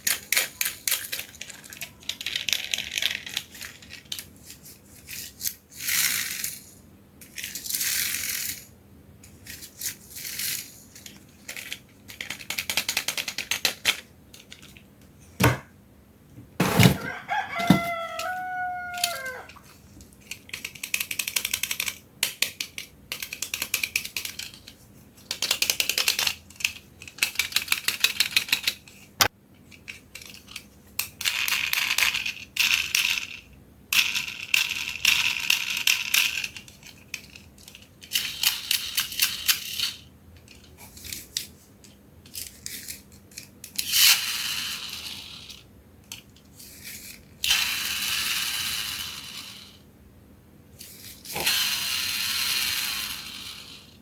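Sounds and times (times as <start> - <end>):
toy cars rattling down plastic track: 0.0 - 8.7, 9.4 - 14.7, 20.2 - 29.1, 29.7 - 41.5, 42.3 - 49.8, 50.8 - 54.0
rooster crowing: 16.8 - 19.6.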